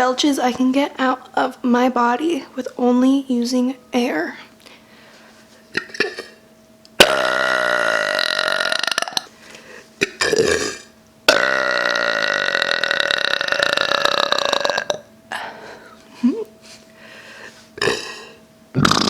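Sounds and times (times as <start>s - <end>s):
woman belching: 7.0s - 9.3s, 10.1s - 15.1s, 17.8s - 19.0s.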